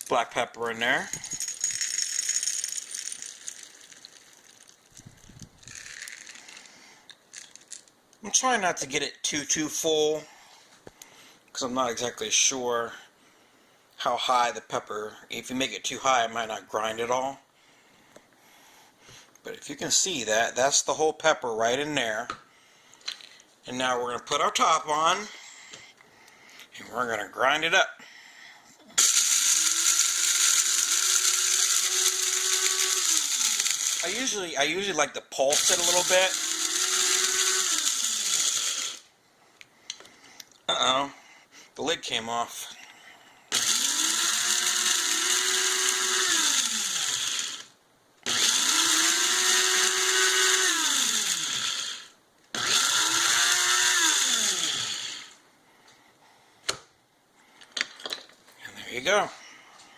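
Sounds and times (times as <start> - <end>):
coffee grinder grinding peppercorns: 1.2 - 7.8, 29.0 - 34.9, 35.5 - 39.1, 43.5 - 47.7, 48.3 - 52.0, 52.6 - 55.3.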